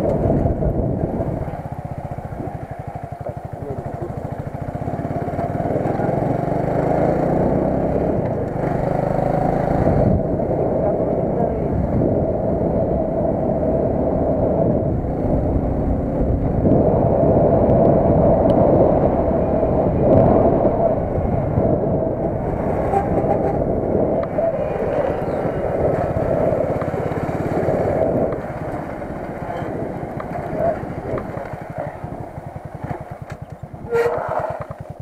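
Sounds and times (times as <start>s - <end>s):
motorcycle engine running: 0.0s - 35.0s.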